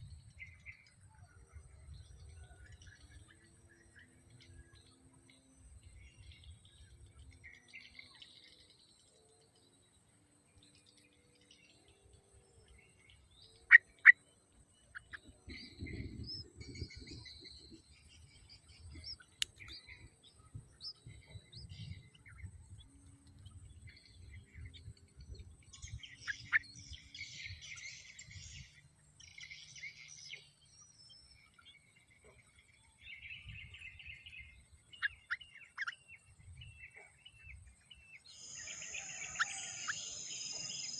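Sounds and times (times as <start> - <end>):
birds chirping: 0.1 - 40.9.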